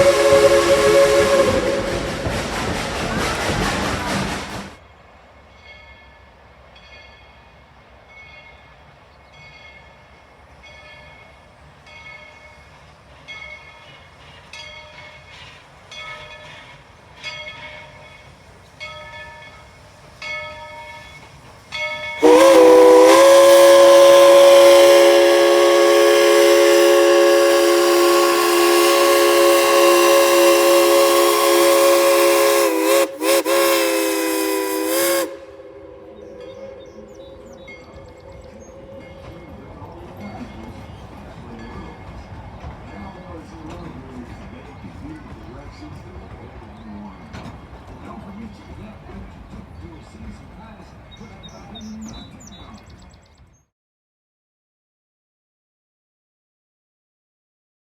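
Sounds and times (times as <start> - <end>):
steam whistle blast: 0.0 - 2.5, 22.2 - 38.1
locomotive bell ringing: 5.5 - 31.6, 36.4 - 44.8.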